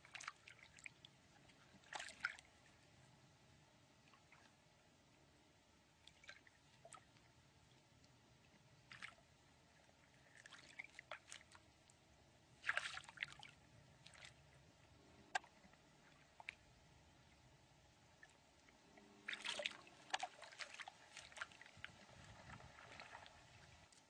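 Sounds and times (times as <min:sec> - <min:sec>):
water splashes and drips: 0:00.0 - 0:02.5, 0:06.0 - 0:07.8, 0:08.9 - 0:09.2, 0:10.2 - 0:12.0, 0:12.6 - 0:14.4, 0:15.3 - 0:16.7, 0:18.2 - 0:24.0.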